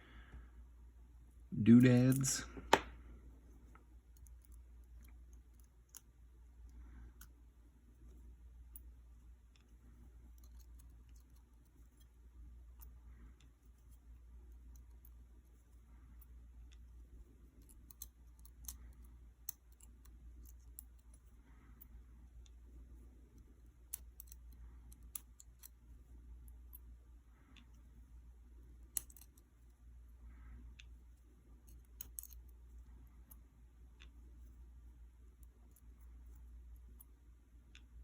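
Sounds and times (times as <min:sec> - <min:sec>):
low steady hum: 0:00.0 - 0:38.0
clicks of metal lock parts: 0:31.7 - 0:32.4.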